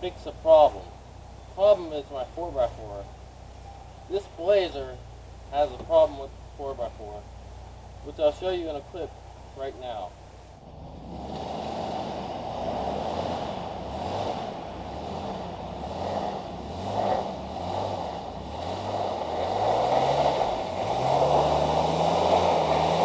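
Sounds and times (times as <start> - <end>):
steady rushing noise: 0.0 - 10.6
engine revving: 0.0 - 23.0.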